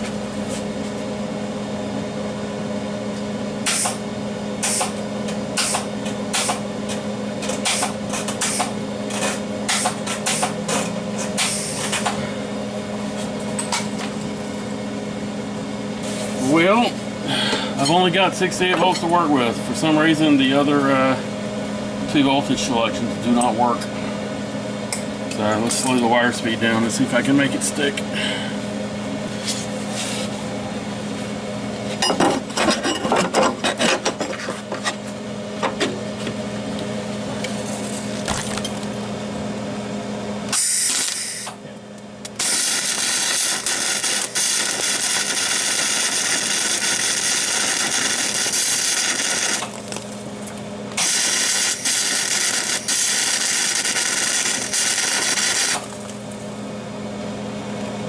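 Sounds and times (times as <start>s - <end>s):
welder transformer hum: 0.0s - 58.0s
welding arc crackling: 40.5s - 41.5s, 42.3s - 50.2s, 50.9s - 56.2s
wire feeder running: 40.5s - 56.7s.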